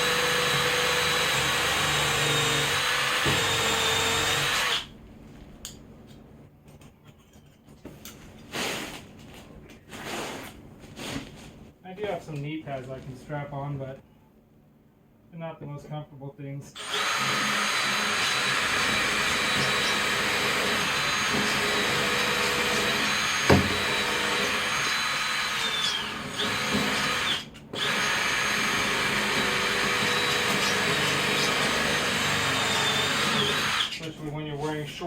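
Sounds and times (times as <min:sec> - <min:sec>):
power drill whining: 0:00.0 - 0:04.9, 0:16.8 - 0:34.0.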